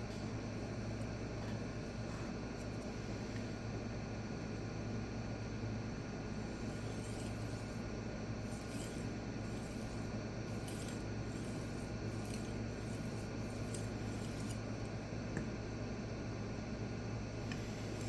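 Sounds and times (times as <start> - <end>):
steady low hum: 0.0 - 18.0
knife scraping on sharpening stone: 6.6 - 7.8, 8.4 - 14.6.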